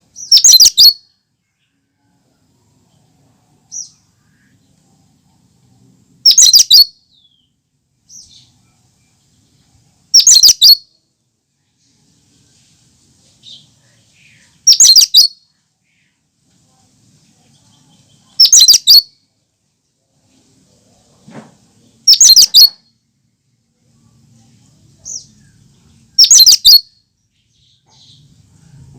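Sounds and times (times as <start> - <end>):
bird calling rapid high notes: 10.1 - 10.8, 14.7 - 15.4, 22.1 - 22.8, 26.2 - 26.8.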